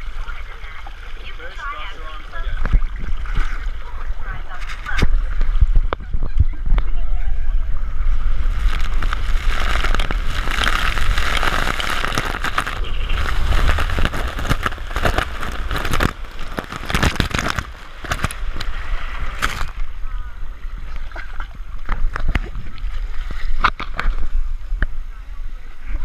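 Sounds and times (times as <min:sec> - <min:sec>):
wind buffeting microphone: 0:04.3 - 0:22.9
water rushing down a slide: 0:08.1 - 0:24.4.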